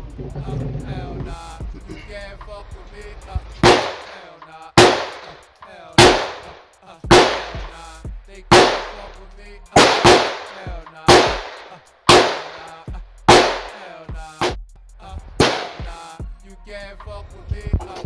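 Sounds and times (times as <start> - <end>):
hip hop music with rapping: 0.0 - 18.0
gunshots with echo: 3.6 - 7.9, 8.5 - 9.2, 9.8 - 14.6, 15.4 - 16.0.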